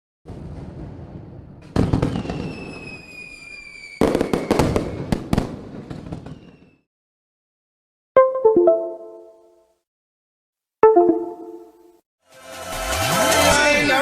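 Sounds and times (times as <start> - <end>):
high falling whistle: 2.2 - 5.1.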